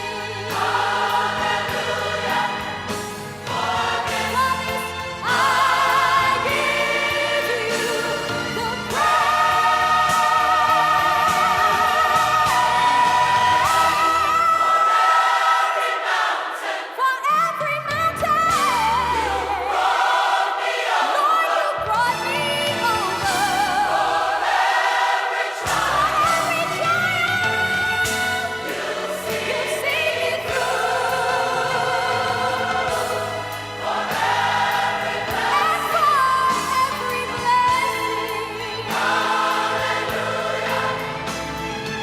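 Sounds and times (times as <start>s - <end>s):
bass accompaniment: 0.0s - 14.7s, 17.9s - 20.0s, 25.6s - 42.0s
gospel choir singing: 0.0s - 42.0s.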